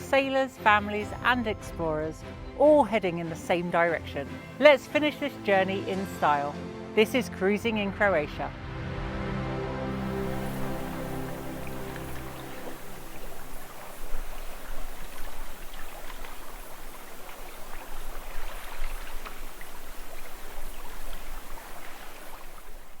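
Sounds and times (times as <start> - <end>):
water splashing and sloshing: 9.0 - 23.0
wind rumbling on microphone: 10.0 - 23.0.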